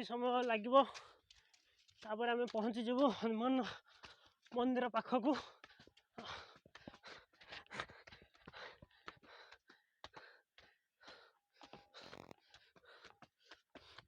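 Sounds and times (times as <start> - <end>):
person breathing: 11.1 - 13.2.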